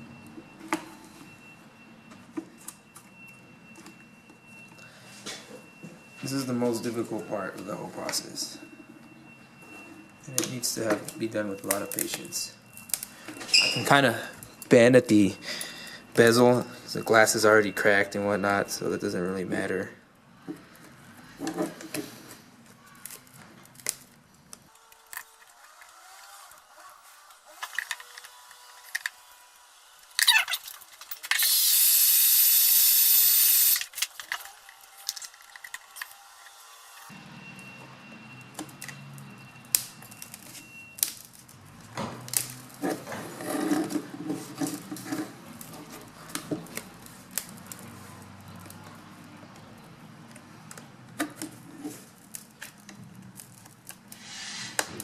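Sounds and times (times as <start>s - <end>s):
loud steady hiss: 31.4s - 33.8s.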